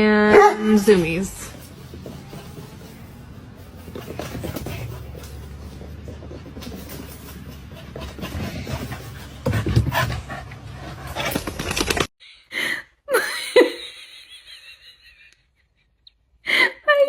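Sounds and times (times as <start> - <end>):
dog panting: 3.6 - 11.8
clattery movement noise: 11.2 - 12.1.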